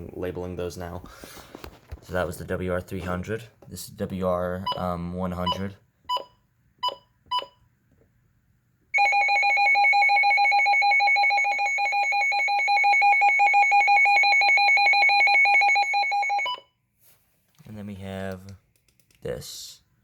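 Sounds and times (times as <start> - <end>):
electronic alert siren trilling: 9.0 - 16.6.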